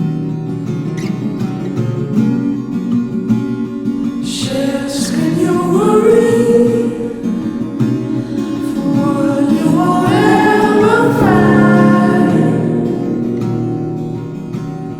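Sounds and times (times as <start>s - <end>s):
song with sung vocals: 4.2s - 14.2s.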